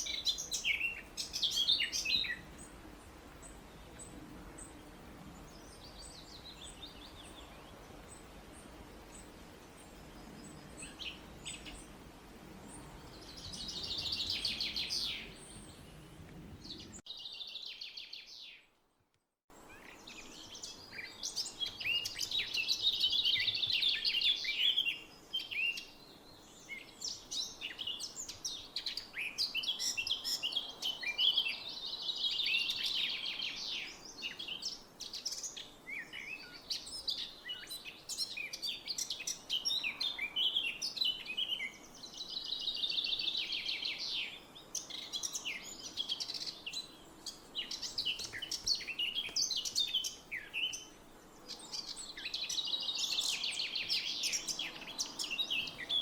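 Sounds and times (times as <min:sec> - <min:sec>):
songbirds chirping: 0:00.0 - 0:56.0.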